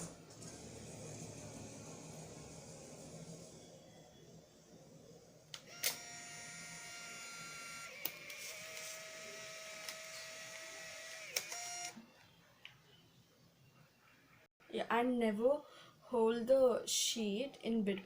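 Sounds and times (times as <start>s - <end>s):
camera shutter click: 5.6s - 6.1s, 9.7s - 11.9s
film ejection motor whirring: 5.6s - 12.0s.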